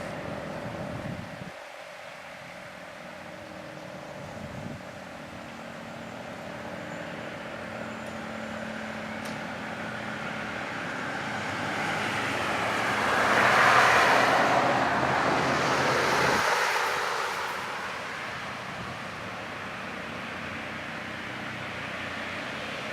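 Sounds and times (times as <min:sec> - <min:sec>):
car driving past: 0:09.1 - 0:20.3.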